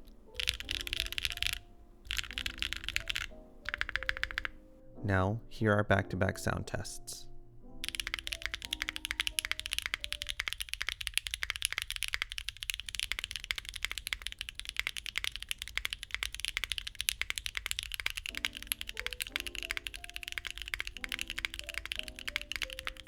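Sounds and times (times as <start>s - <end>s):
mechanical keyboard typing: 0.0s - 4.6s, 7.8s - 23.0s
background music: 0.0s - 11.5s, 17.8s - 23.0s.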